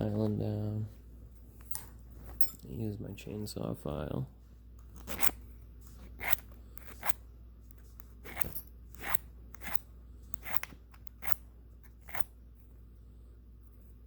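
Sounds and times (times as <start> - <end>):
file scraping across steel nail: 5.0 - 5.4, 6.1 - 7.2, 8.2 - 12.3.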